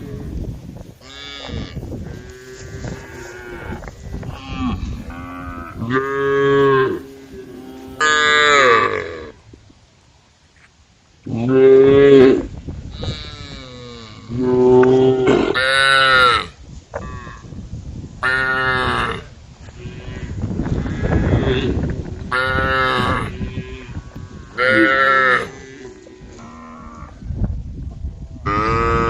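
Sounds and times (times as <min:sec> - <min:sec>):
rough noise: 0:00.0 - 0:09.5
cattle mooing: 0:01.0 - 0:09.4.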